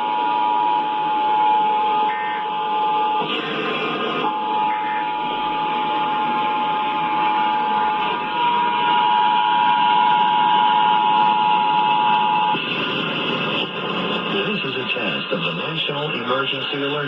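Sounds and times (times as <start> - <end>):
two-tone alert signal: 2.1 - 2.5, 4.2 - 12.5.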